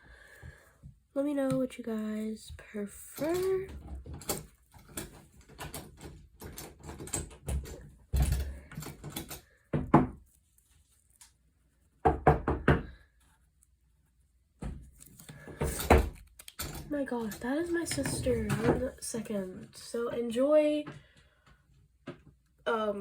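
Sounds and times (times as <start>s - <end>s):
knocking on a door: 9.7s - 10.2s, 12.0s - 13.0s
handling sounds: 14.6s - 19.0s.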